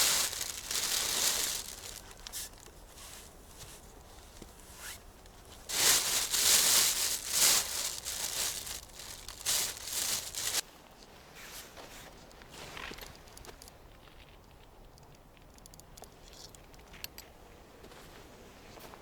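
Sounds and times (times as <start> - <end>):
dry material crinkling and tearing: 0.0 - 2.8, 5.3 - 10.6.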